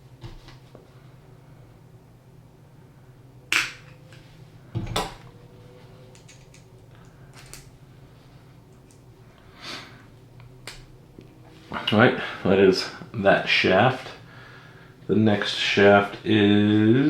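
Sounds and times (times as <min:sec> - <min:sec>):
small metal parts clicking: 0:06.1 - 0:06.7, 0:07.3 - 0:07.7.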